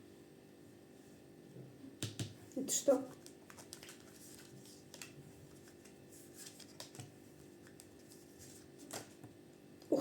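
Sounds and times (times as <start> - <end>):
cards clicking and rustling: 3.2 - 9.2.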